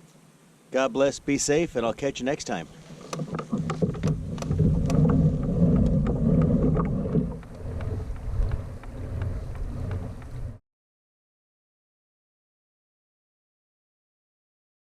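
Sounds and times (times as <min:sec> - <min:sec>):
wind rumbling on microphone: 0:02.7 - 0:10.6.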